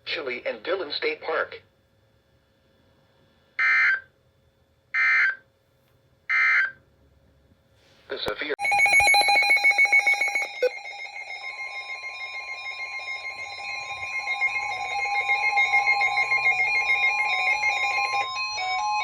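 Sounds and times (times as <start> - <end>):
steady warning alarm tone: 3.6 - 4.0, 5.0 - 5.4, 6.3 - 6.8, 8.6 - 19.0
pulsing electronic alarm tones: 8.6 - 19.0.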